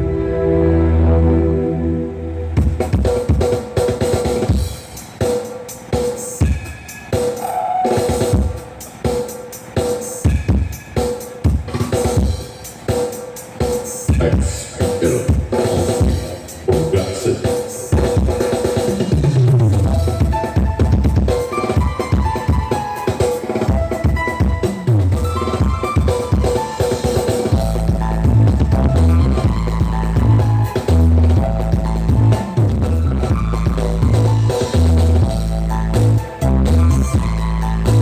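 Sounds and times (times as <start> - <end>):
deep bass sweep falling: 0.0 - 3.1
loud dance music: 0.0 - 5.0, 6.4 - 8.8, 14.0 - 38.0.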